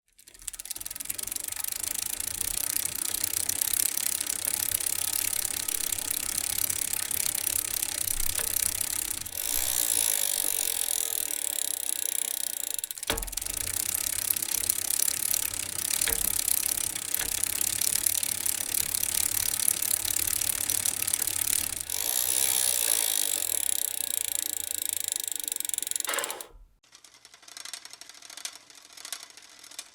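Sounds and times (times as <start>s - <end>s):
chain and gear noise: 0.2s - 26.4s
bicycle freewheel ratchet clicking: 0.2s - 29.9s.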